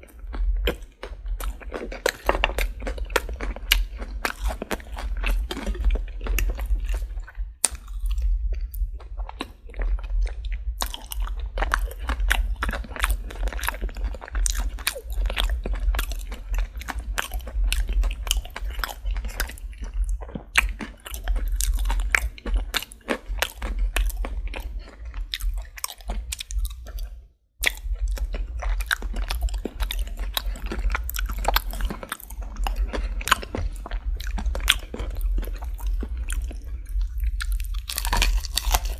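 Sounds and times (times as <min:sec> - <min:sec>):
crunchy chewing of fried chicken: 0:00.0 - 0:38.9.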